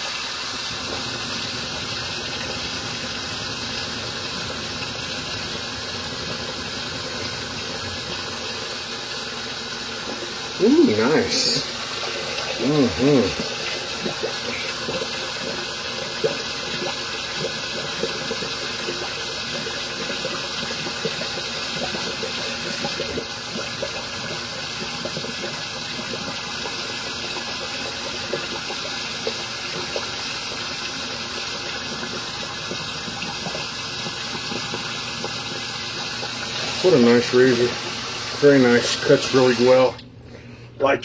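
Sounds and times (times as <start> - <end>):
tap water running into sink: 0.0 - 40.1.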